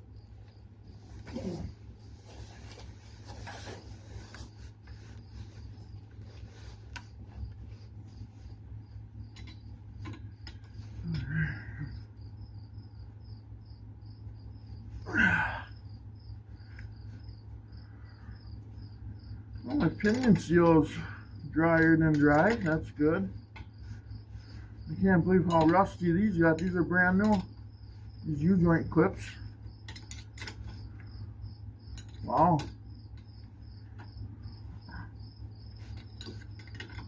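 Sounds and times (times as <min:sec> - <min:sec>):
steady low hum: 0:00.0 - 0:37.0
hand tools clicking and knocking: 0:09.3 - 0:11.2, 0:19.7 - 0:23.8, 0:24.9 - 0:27.6, 0:29.8 - 0:30.8, 0:31.9 - 0:33.3, 0:35.8 - 0:37.0.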